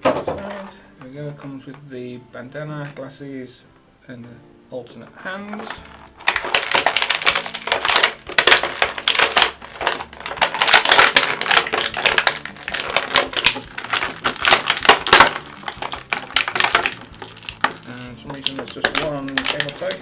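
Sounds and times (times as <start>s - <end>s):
plastic packaging crinkling: 5.5s - 20.0s.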